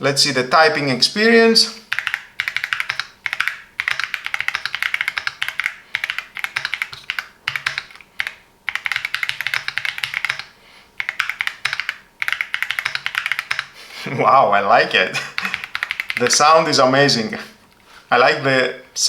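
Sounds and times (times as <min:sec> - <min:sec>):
fast typing on mechanical keyboard: 0:01.8 - 0:13.8, 0:15.3 - 0:16.6.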